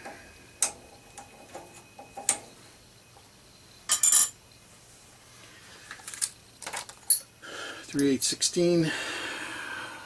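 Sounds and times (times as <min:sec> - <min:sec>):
metal tools clicking and clinking: 0:03.9 - 0:04.4, 0:05.9 - 0:07.3.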